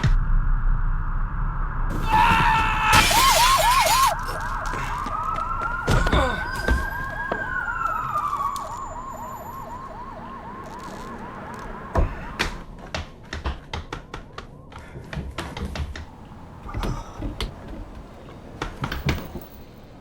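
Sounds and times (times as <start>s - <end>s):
police siren yelping: 1.9s - 12.6s
long rising and falling tone: 3.4s - 12.6s.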